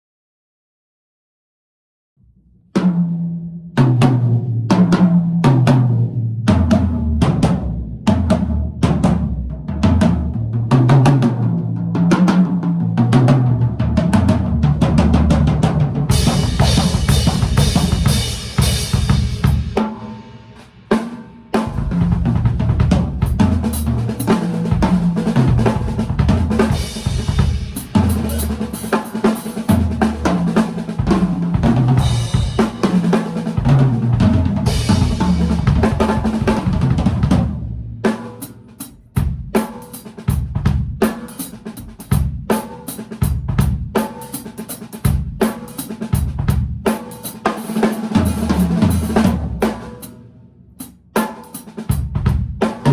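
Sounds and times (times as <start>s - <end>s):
drum kit playing: 6.6s - 52.9s
tom fills: 16.1s - 37.1s.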